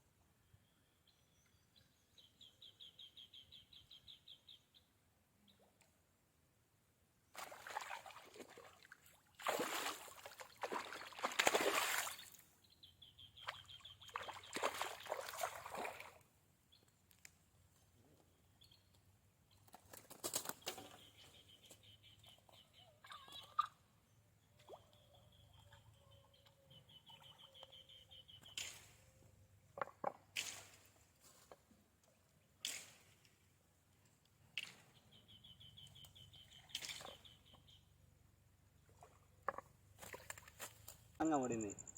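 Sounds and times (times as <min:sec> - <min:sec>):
water splashing and sloshing: 0:07.4 - 0:12.4, 0:13.4 - 0:16.3, 0:29.7 - 0:33.5, 0:36.6 - 0:37.6, 0:38.7 - 0:41.0.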